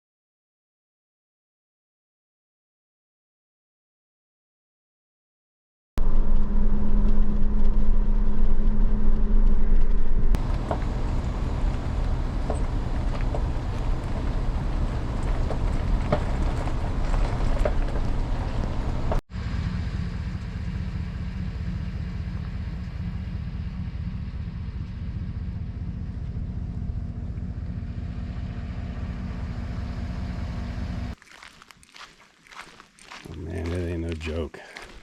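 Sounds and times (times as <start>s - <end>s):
motorboat engine running: 6.0s - 31.1s
wind: 6.0s - 35.0s.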